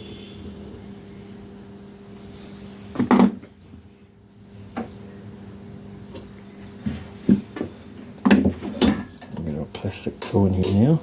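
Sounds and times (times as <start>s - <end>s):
metal picks clicking and knocking: 10.2s - 11.0s.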